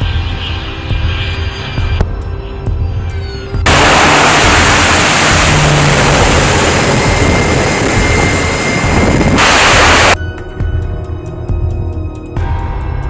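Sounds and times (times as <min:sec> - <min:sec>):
jet engine roar: 0:00.0 - 0:10.2.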